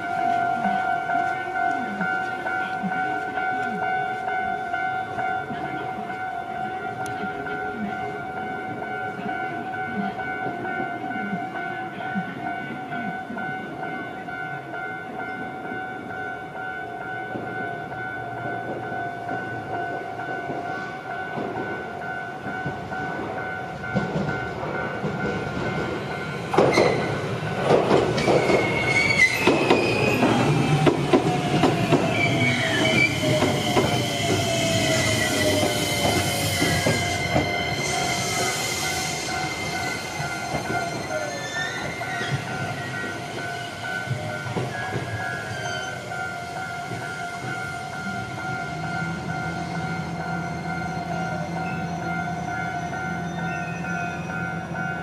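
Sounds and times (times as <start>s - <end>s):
electric train whine: 0.0s - 55.0s
level crossing warning bell: 0.0s - 55.0s
train wheels clacking over rail joints: 22.6s - 45.8s
high wheel squeal: 28.2s - 54.5s.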